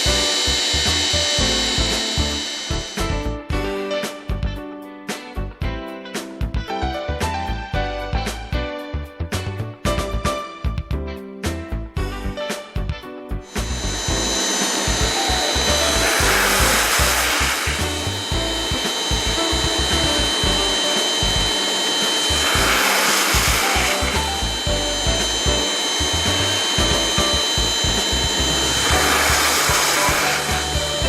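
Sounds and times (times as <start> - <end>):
pressure washer whine: 0.0 - 3.9, 13.5 - 31.0
background music: 0.0 - 31.0
hissing water spray: 13.6 - 31.0.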